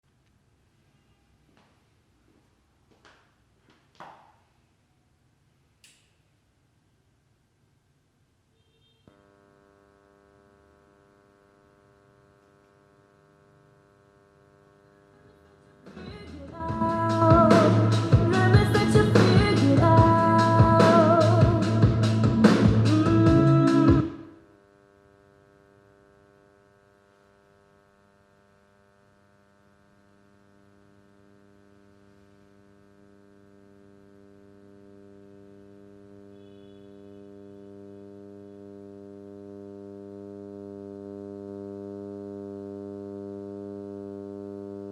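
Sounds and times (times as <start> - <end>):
electrical hum: 8.9 - 44.9
loud music with drum beat: 15.9 - 24.1.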